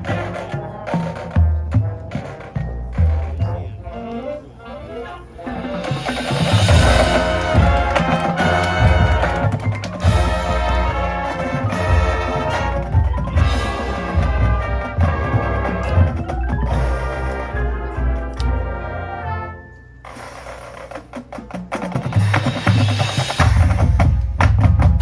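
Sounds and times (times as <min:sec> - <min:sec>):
marching band playing: 0:00.0 - 0:25.0.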